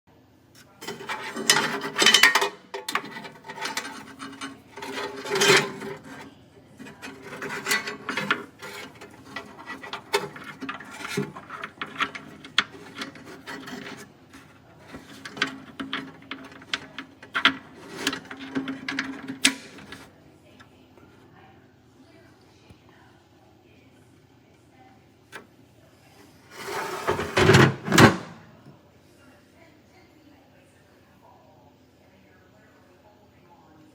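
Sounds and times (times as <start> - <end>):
rubbing and scraping: 0.6 - 20.1, 26.4 - 28.4.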